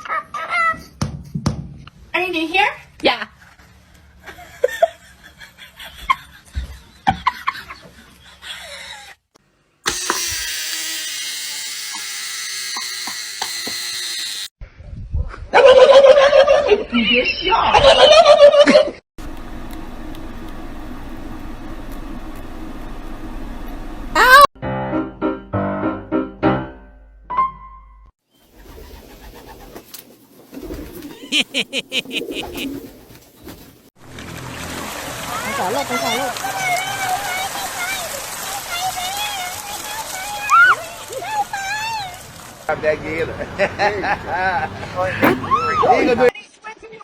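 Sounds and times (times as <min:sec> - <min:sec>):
small electric motor buzzing: 0:09.8 - 0:14.6
bird cooing: 0:30.6 - 0:33.1.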